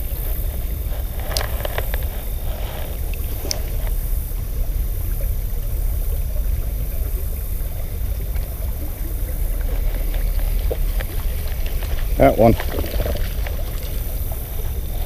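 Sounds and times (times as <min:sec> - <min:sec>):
river water rumbling: 0:00.0 - 0:15.0.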